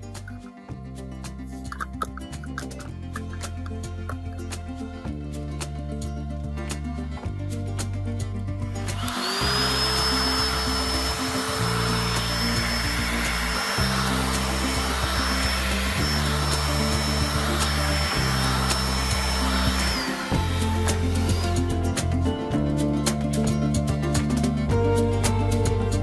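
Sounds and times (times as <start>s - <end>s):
background music: 0.0s - 26.0s
small electric fan motor whining: 8.7s - 22.0s.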